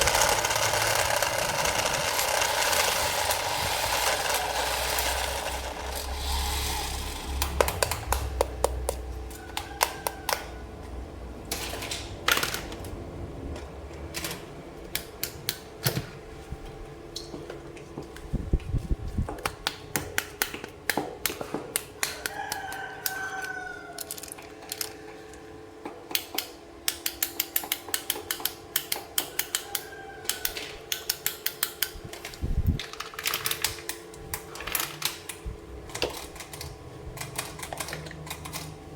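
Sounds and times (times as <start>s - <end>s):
plastic toy pieces clicking: 0.0s - 6.8s, 24.0s - 25.0s.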